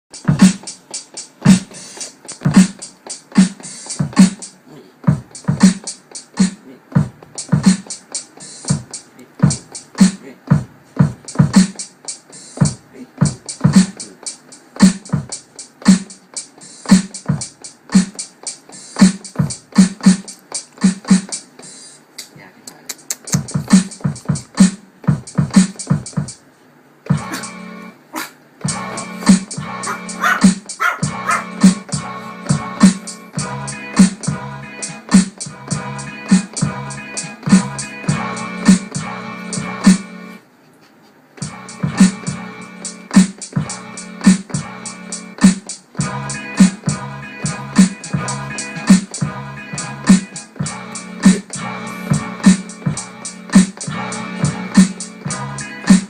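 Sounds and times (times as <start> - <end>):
snare and hi-hat hits: 0.1 - 26.5, 27.1 - 27.5, 28.2 - 40.1, 41.4 - 56.0
kick drum thumps: 0.3 - 0.6, 2.4 - 2.8, 4.0 - 4.4, 5.0 - 5.8, 6.9 - 7.8, 8.7 - 11.7, 12.6 - 13.9, 23.4 - 26.3.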